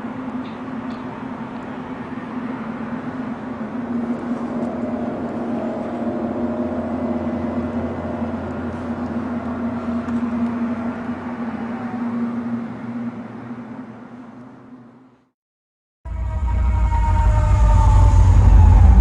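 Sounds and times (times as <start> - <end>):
low steady drone: 0.0 - 15.0, 16.1 - 19.0.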